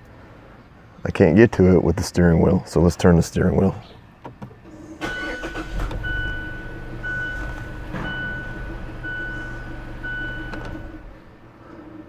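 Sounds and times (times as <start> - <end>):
car engine humming: 4.2 - 12.0
dashboard warning chime beeping: 5.0 - 11.1.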